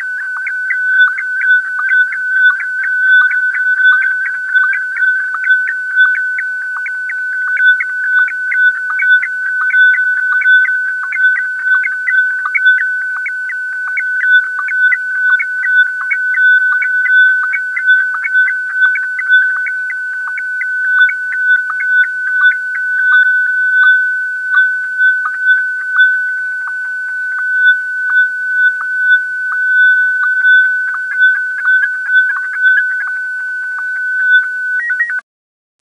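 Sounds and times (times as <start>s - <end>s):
faint sweeping whistles: 0.0s - 35.2s
pulsing whistle-like radio tone: 0.0s - 35.2s.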